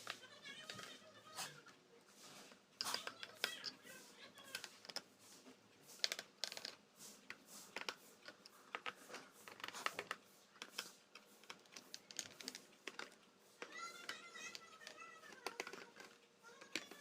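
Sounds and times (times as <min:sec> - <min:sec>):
screws knocking against casing: 0:07.7 - 0:17.0.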